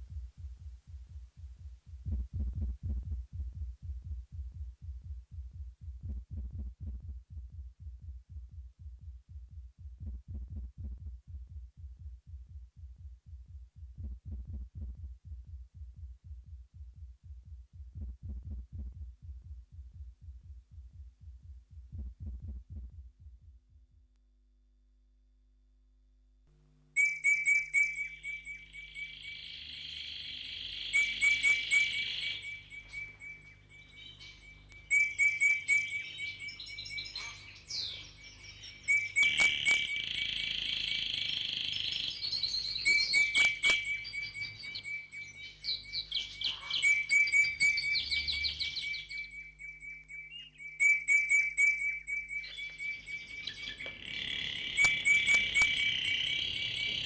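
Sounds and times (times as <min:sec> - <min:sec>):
birds chirping: 0:27.0 - 0:57.0.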